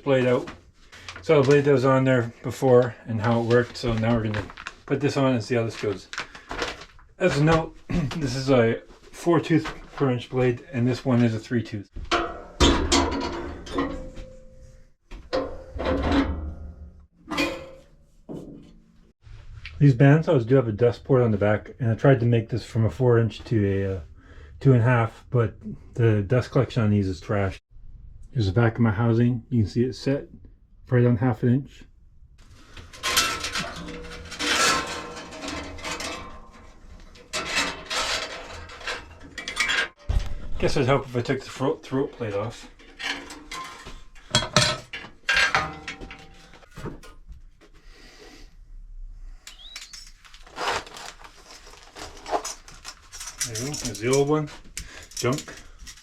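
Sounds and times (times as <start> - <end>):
knocks and clatter on metal housing: 12.0 - 14.5, 15.3 - 18.8, 33.0 - 40.6, 42.7 - 47.2
metal scraping and rubbing: 32.4 - 46.8, 49.5 - 56.0.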